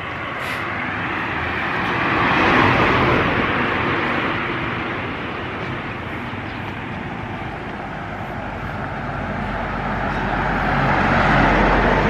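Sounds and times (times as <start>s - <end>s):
vehicle road noise: 0.0s - 12.0s.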